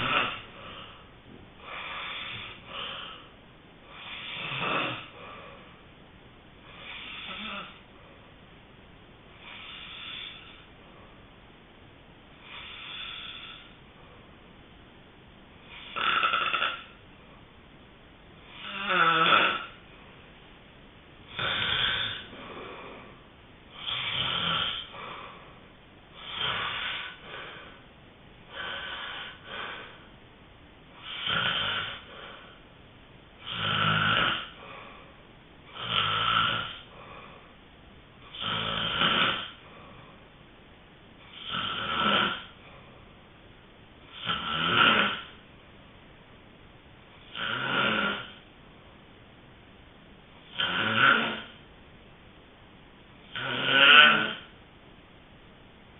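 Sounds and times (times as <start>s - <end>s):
person snoring: 0.0s - 3.3s, 3.9s - 5.7s, 6.7s - 7.8s, 9.3s - 10.7s, 12.4s - 13.8s, 15.7s - 17.0s, 18.4s - 19.8s, 21.3s - 25.4s, 26.2s - 27.8s, 28.5s - 30.1s, 31.0s - 32.6s, 33.4s - 35.1s, 35.7s - 37.5s, 38.3s - 40.0s, 41.3s - 42.7s, 44.1s - 45.4s, 47.2s - 48.4s, 50.5s - 51.6s, 53.3s - 54.5s.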